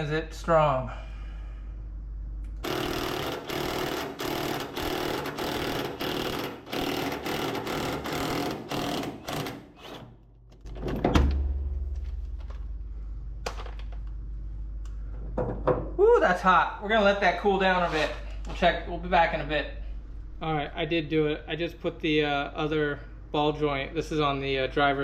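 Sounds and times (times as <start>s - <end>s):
impact wrench bursts: 2.6s - 10.1s.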